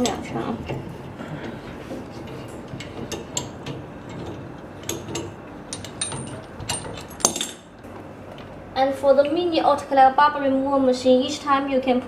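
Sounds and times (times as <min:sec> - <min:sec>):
mechanical clicks and clatter: 0:00.0 - 0:08.5.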